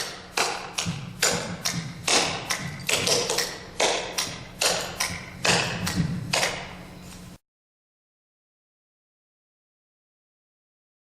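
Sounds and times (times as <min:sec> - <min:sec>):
clogging shoe taps on hard floor: 0:00.8 - 0:06.5.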